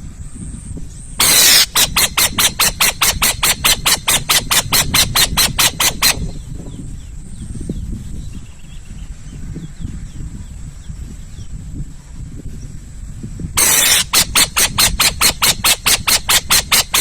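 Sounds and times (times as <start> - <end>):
faint outdoor background: 0.0 - 17.0
owl hissing notes: 1.2 - 6.6, 13.6 - 17.0.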